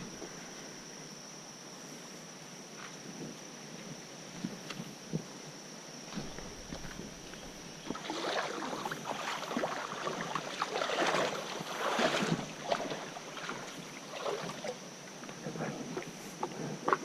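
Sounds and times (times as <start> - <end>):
wading steps splashing water: 6.1 - 14.9.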